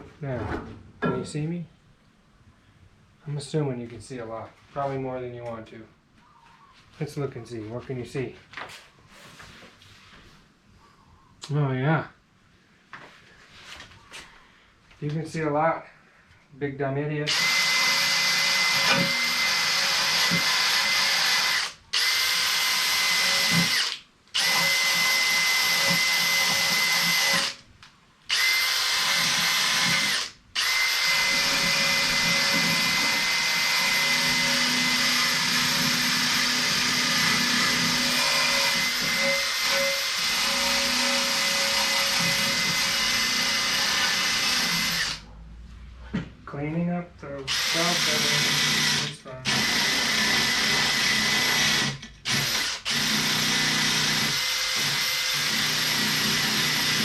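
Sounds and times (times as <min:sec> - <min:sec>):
power tool high whine: 0:17.3 - 0:27.6, 0:28.3 - 0:45.2.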